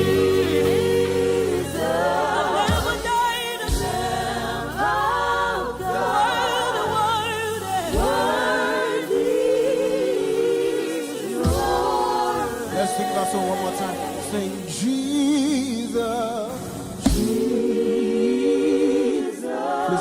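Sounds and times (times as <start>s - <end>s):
keyboard and bass: 0.0s - 10.4s
choir singing held notes: 0.0s - 20.0s
low drum hits: 17.1s - 17.6s.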